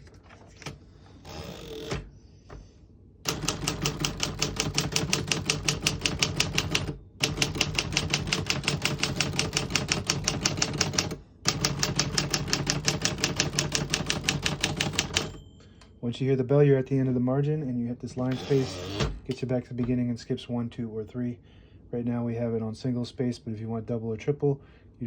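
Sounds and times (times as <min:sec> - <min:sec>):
manual typewriter typing: 0:03.3 - 0:15.4.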